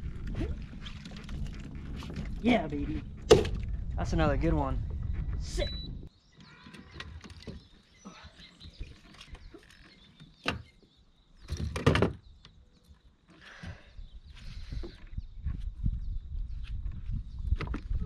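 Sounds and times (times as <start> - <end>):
knocks and clicks handling gear: 6.4 - 7.9.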